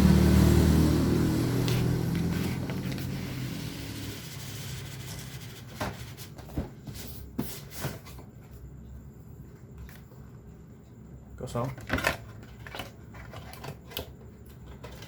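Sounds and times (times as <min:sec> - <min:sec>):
vehicle engine hum: 0:00.0 - 0:05.5.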